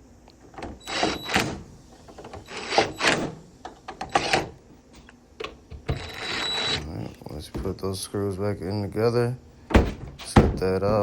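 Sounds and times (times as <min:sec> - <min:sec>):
power screwdriver running: 0:05.9 - 0:06.8.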